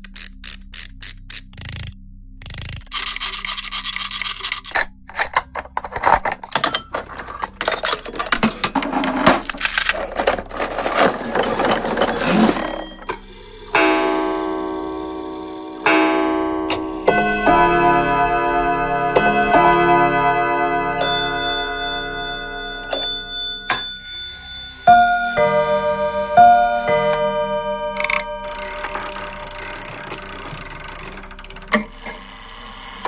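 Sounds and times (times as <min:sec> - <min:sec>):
clockwork clicking and rattling: 0:00.0 - 0:16.9, 0:21.1 - 0:25.6, 0:28.0 - 0:33.0
clock chime ringing: 0:12.6 - 0:31.7.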